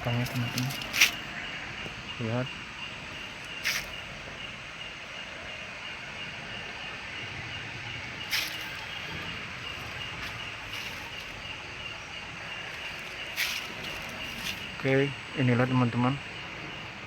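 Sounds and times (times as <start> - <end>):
crickets chirring: 0.0 - 17.0
scuffs: 8.3 - 8.9.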